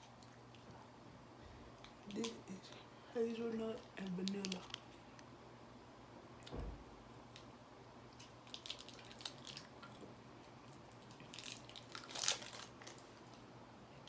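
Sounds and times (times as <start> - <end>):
plastic packaging crinkling: 3.4 - 5.0, 8.2 - 10.0, 10.7 - 13.4
plastic packaging tearing: 8.4 - 9.7, 11.2 - 13.1.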